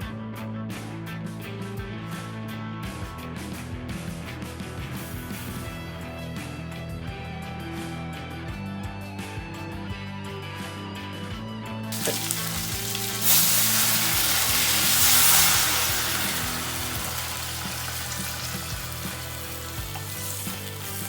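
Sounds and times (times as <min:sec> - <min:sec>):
background music: 0:00.0 - 0:21.0
food sizzling in a pan: 0:11.9 - 0:21.0.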